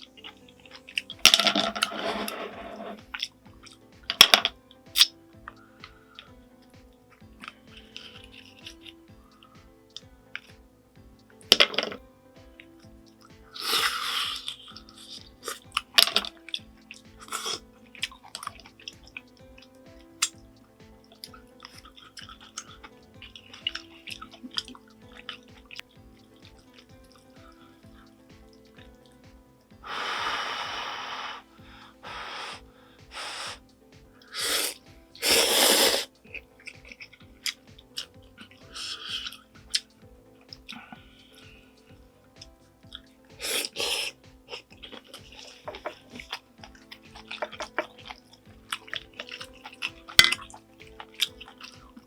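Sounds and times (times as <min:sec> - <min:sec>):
soft background music: 0:00.0 - 0:52.0
slurping noodles: 0:01.8 - 0:03.3, 0:13.5 - 0:16.3, 0:17.2 - 0:18.6, 0:29.8 - 0:33.6, 0:34.2 - 0:37.2, 0:43.4 - 0:52.0
wet chewing and smacking: 0:14.3 - 0:29.2, 0:36.1 - 0:41.7, 0:42.4 - 0:52.0
noodles being slurped: 0:34.2 - 0:39.8, 0:43.3 - 0:52.0.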